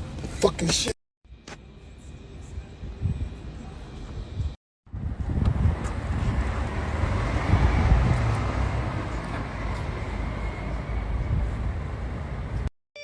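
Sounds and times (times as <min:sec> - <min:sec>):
car moving low rumble: 0:02.4 - 0:12.7
wind buffeting microphone: 0:02.6 - 0:10.2, 0:10.8 - 0:12.6.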